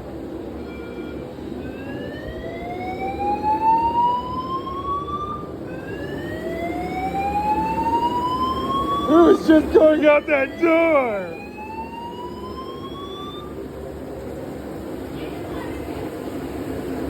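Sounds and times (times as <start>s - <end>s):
fire alarm whooping tone: 0.6s - 13.6s.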